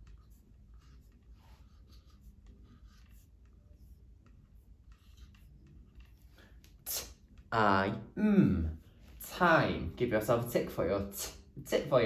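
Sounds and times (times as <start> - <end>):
pen scratching while writing: 0.0 - 6.3.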